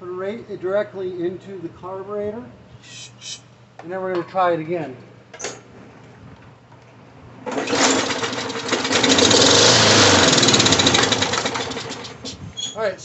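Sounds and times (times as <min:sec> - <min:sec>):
lawn mower engine running: 0:07.4 - 0:12.4.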